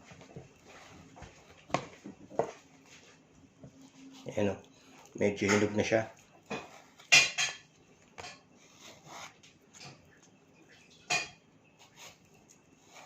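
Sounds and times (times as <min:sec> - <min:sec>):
knife scraping and clicking on dishes: 0:05.4 - 0:08.4, 0:11.0 - 0:11.4.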